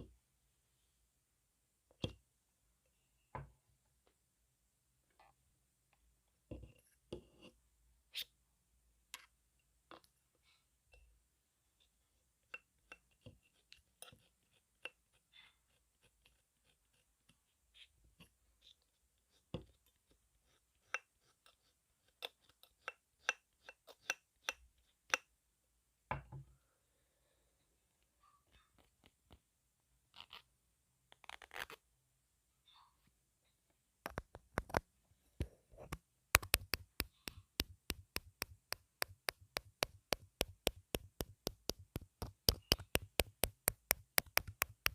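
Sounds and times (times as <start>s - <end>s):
tapping and clicking on microphone: 34.1s - 44.9s.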